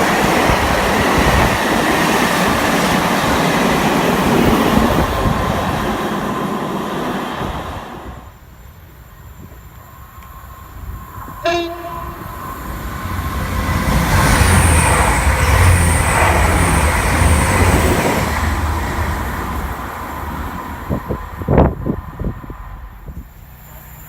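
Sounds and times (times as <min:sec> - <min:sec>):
train passing rumble: 0:00.0 - 0:24.0
train horn blast: 0:11.4 - 0:12.6.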